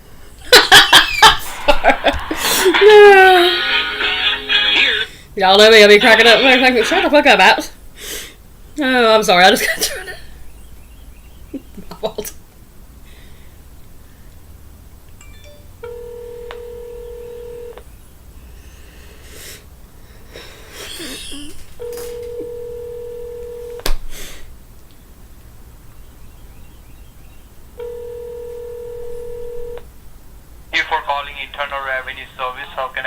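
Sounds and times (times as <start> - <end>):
telephone ringback tone: 15.2 - 17.8, 21.8 - 23.8, 27.8 - 29.8.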